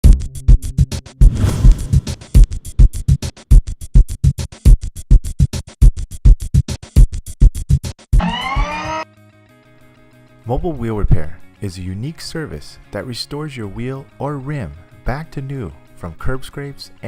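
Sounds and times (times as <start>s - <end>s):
electronic drum machine music: 8.2s - 9.0s
rising pitch sweep: 8.2s - 9.0s.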